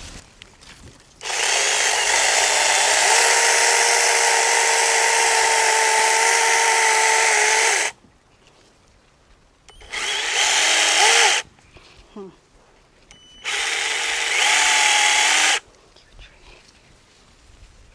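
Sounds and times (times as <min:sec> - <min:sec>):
mini chainsaw motor whine: 0:01.2 - 0:08.0, 0:09.7 - 0:11.4, 0:13.2 - 0:15.6.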